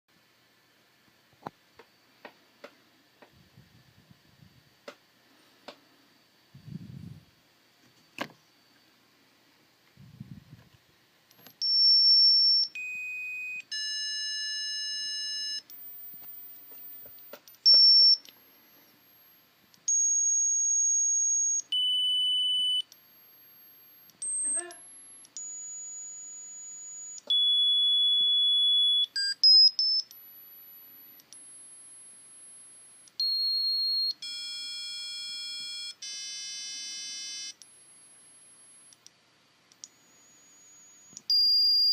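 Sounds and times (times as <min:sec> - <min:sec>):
buzzer tones at varying pitches: 0:33.2 - 0:37.6.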